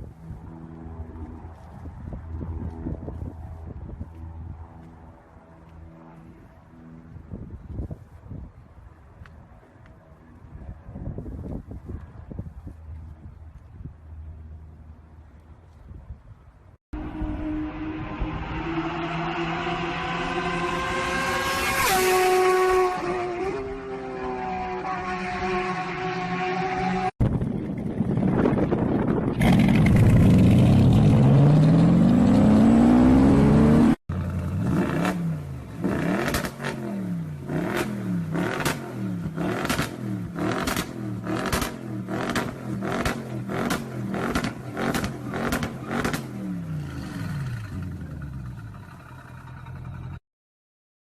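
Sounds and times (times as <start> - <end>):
sports car engine revving: 29.4 - 50.0
exhaust cracks: 34.1 - 36.9, 37.6 - 50.2.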